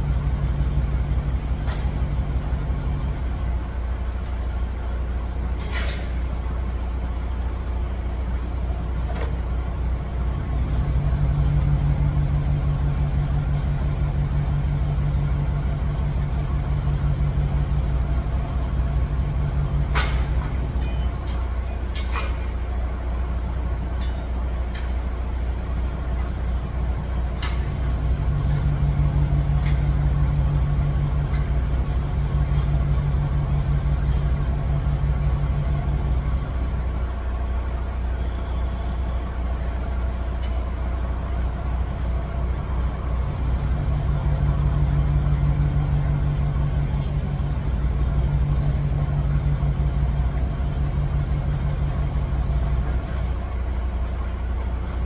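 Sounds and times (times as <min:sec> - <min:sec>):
vehicle engine idling and revving: 0:00.0 - 0:55.0.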